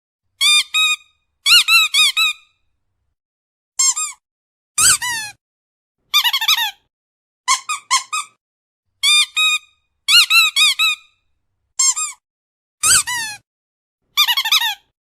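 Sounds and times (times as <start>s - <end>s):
high-pitched squeaks: 12.8s - 13.4s.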